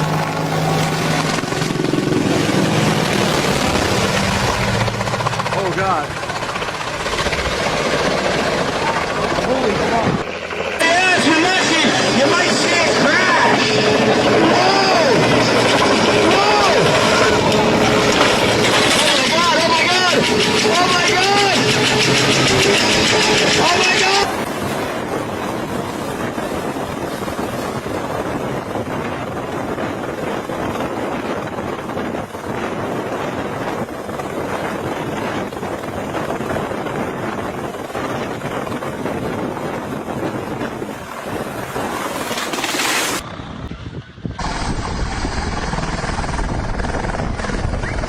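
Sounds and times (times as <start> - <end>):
deep rumble: 0.0 - 10.8, 43.2 - 48.0
helicopter noise: 0.0 - 48.0
wind buffeting microphone: 0.0 - 48.0.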